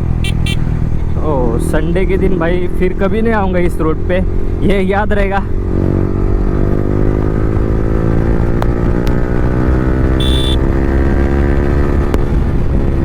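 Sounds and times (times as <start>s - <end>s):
motorcycle engine running loud: 0.0s - 13.0s
short high beep: 10.2s - 10.6s.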